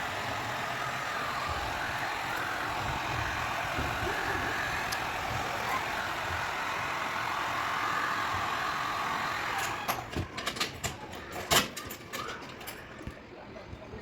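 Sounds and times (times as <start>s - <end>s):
steady hiss: 0.0s - 9.9s.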